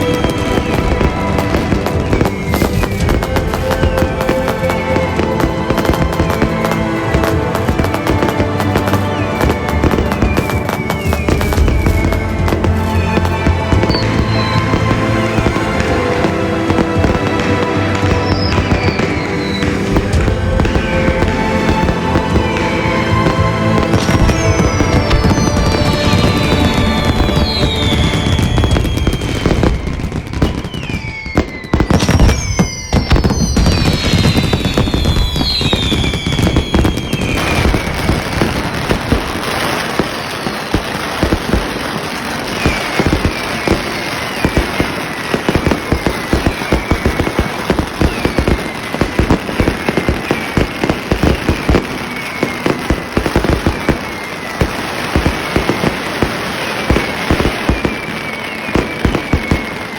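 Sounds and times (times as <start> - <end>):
firecrackers crackling bangs: 0.0 - 59.9
fireworks whistles falling in pitch: 0.0 - 59.9.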